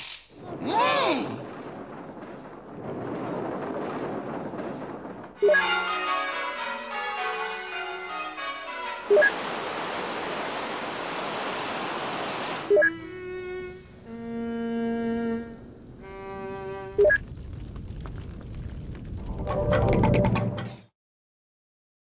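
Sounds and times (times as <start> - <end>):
steady hiss: 0.0 - 0.6, 8.8 - 12.8.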